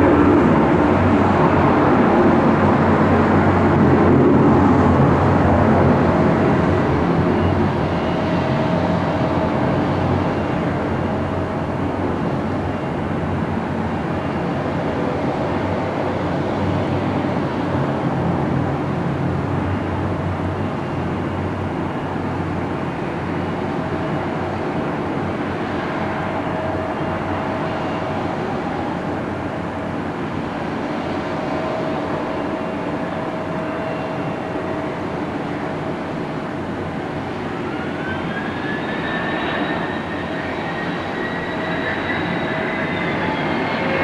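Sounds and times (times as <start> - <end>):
jet engine rumble: 24.2 - 44.0.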